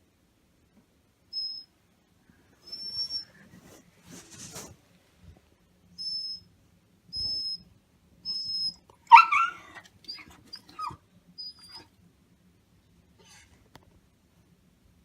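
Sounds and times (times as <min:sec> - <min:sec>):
dog whining: 0:02.6 - 0:03.4, 0:08.2 - 0:12.0
dog yelping cry: 0:08.3 - 0:11.9.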